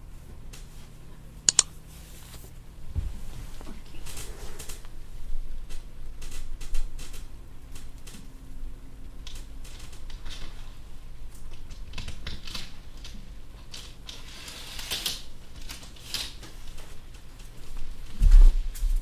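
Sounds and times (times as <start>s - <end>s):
steady low hum: 0.0s - 14.4s, 15.2s - 19.0s
clicks and scratchy strokes: 3.5s - 4.9s.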